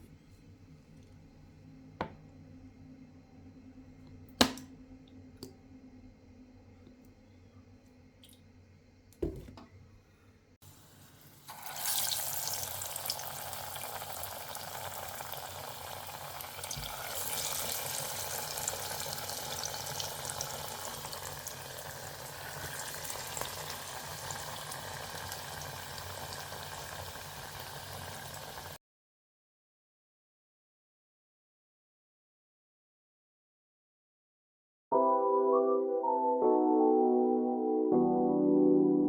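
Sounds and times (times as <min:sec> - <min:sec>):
short knock: 0:09.2 - 0:09.7
fritters sizzling in hot oil: 0:10.7 - 0:28.8.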